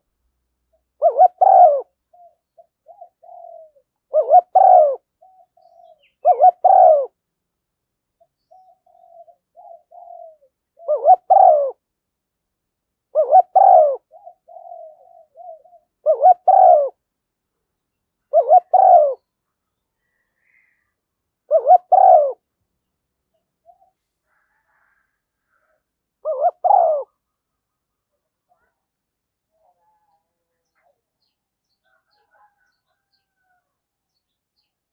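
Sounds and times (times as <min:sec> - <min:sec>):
dove cooing: 0:01.0 - 0:07.2, 0:08.4 - 0:11.8, 0:13.1 - 0:17.0, 0:18.3 - 0:19.3, 0:21.5 - 0:22.5, 0:23.6 - 0:27.2.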